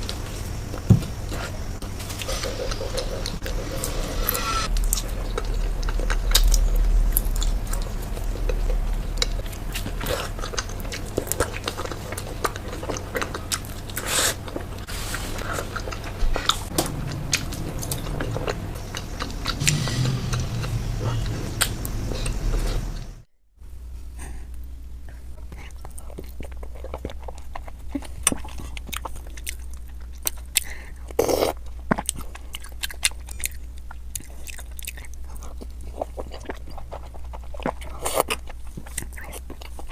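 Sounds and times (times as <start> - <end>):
steady low hum: 0.0 - 39.9
biting and chewing sweets: 4.7 - 23.0, 24.2 - 39.9.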